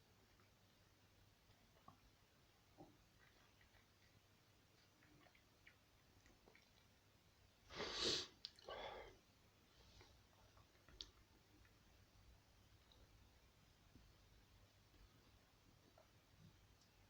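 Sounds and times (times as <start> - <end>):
person sneezing: 7.7 - 8.4
person sniffing: 7.7 - 9.1.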